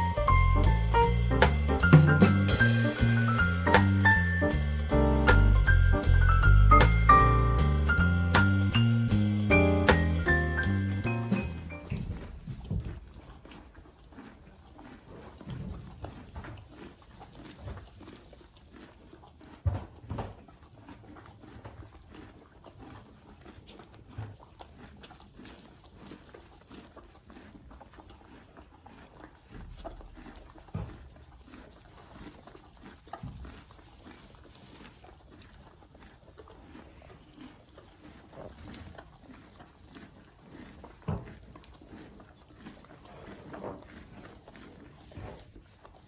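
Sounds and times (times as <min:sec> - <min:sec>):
horses chewing grass: 0:00.0 - 0:46.0
dull thumps: 0:01.0 - 0:02.7.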